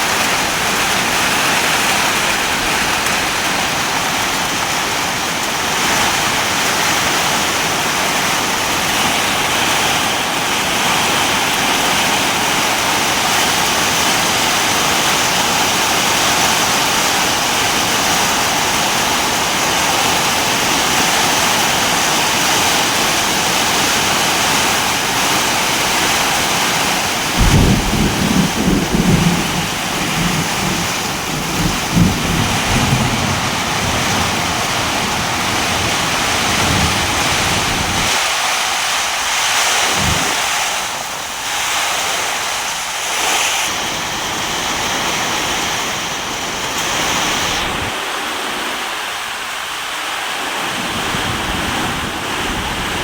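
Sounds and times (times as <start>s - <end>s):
heavy rain hissing: 0.0s - 53.0s
thunder rumbling: 27.0s - 38.1s.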